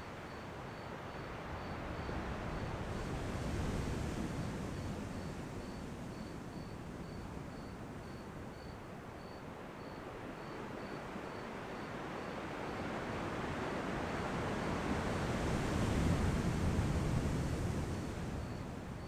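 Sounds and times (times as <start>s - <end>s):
ocean surf washing: 1.4s - 6.9s, 12.5s - 19.0s.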